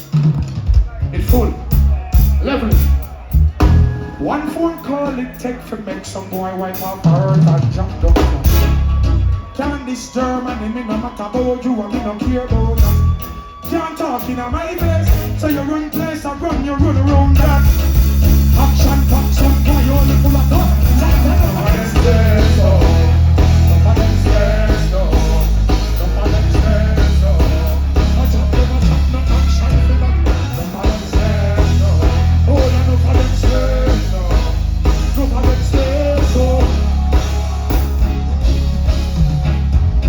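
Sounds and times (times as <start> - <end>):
live reggae band music: 0.0 - 40.0.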